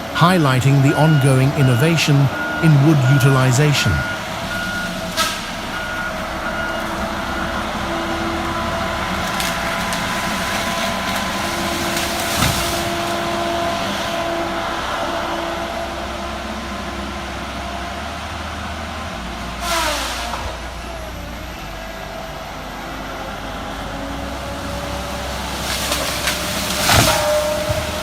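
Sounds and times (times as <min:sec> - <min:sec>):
diesel engine running: 0:00.0 - 0:28.0.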